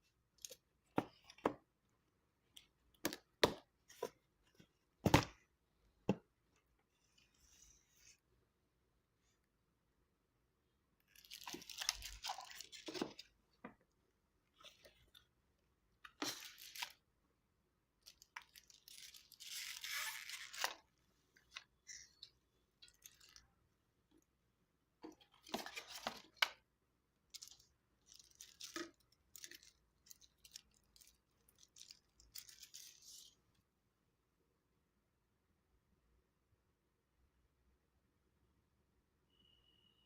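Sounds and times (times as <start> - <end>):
packaging rustling and tearing: 11.1 - 13.3, 16.2 - 17.0, 18.1 - 20.8.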